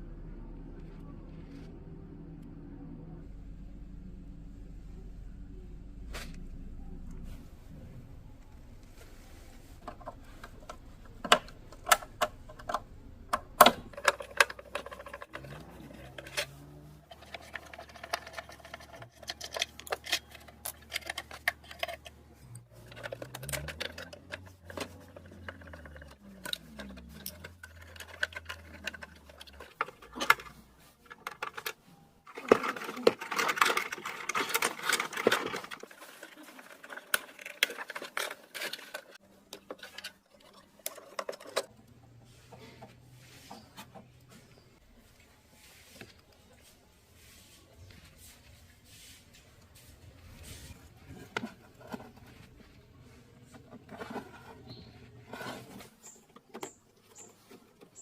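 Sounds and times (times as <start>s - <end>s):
small parts clicking and knocking: 9.8s - 43.0s, 53.6s - 58.0s.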